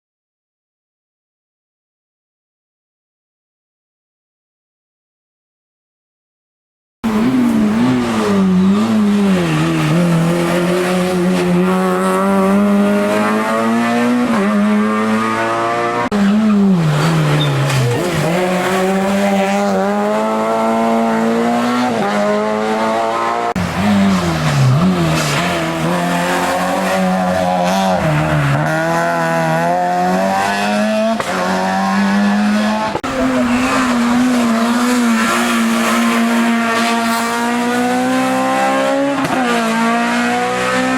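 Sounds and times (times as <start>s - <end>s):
racing car engine accelerating: 7.0s - 40.9s.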